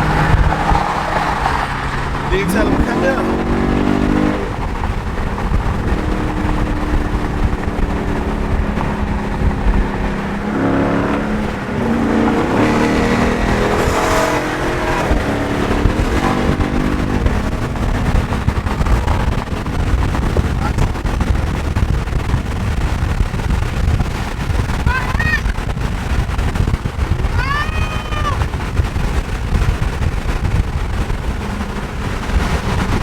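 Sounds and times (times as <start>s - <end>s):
car engine accelerating: 0.0s - 33.0s
man talking: 2.3s - 3.4s.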